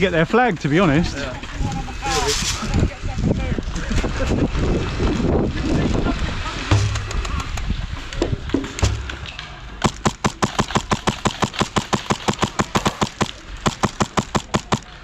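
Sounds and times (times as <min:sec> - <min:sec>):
fast sharp clicks: 0:09.8 - 0:15.0.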